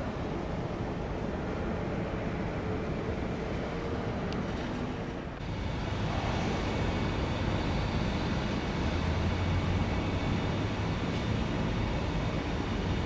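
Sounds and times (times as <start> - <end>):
jet engines rumbling: 5.0 - 13.0.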